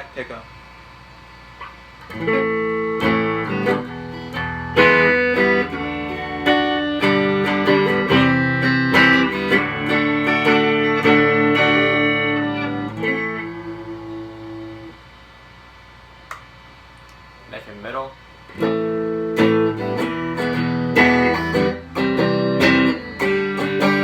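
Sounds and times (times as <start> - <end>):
clean electric guitar: 1.6 - 15.1, 18.5 - 24.0.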